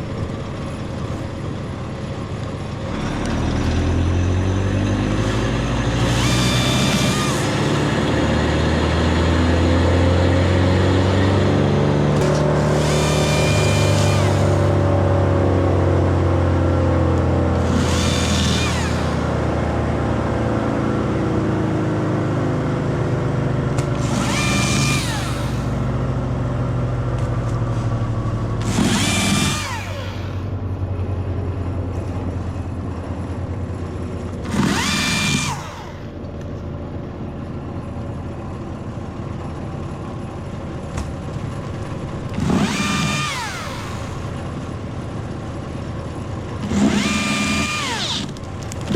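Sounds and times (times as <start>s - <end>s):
low engine hum: 0.0s - 48.9s
electric chainsaw whining: 3.0s - 10.5s, 11.1s - 15.2s, 17.5s - 20.0s, 23.6s - 26.0s, 28.5s - 30.7s, 34.3s - 36.2s, 42.3s - 44.4s, 46.6s - 48.9s.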